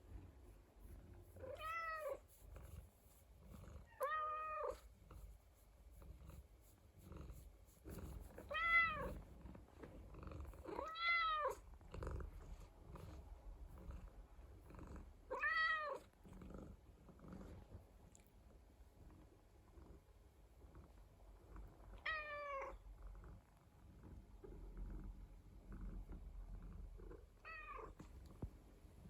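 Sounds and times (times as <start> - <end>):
cat purring: 0.0 - 29.0
cat meowing: 1.4 - 2.2, 8.5 - 9.1, 10.8 - 11.6, 15.3 - 16.0.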